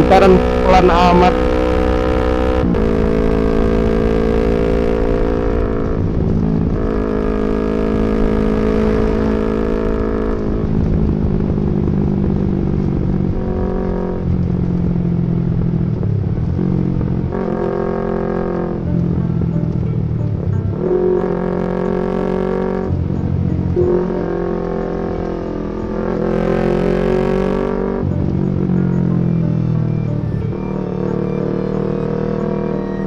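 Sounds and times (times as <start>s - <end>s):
motorcycle engine revving: 0.0s - 33.0s.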